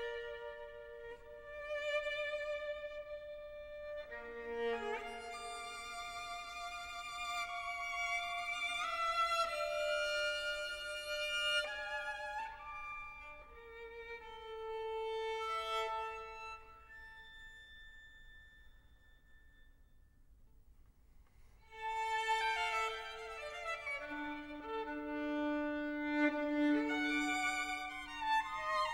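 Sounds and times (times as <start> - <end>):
violin playing slow notes: 0.0 - 18.6, 21.6 - 28.9.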